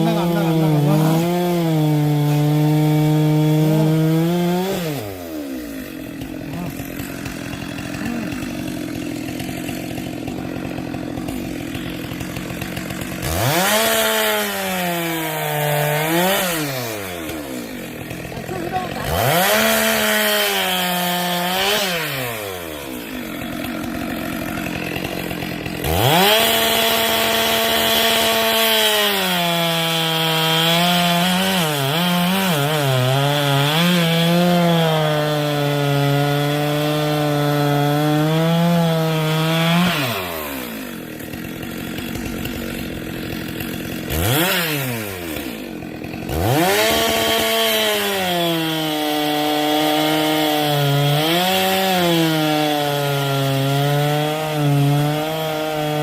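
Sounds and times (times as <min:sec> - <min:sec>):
chainsaw revving and cutting wood: 0:00.0 - 0:56.0.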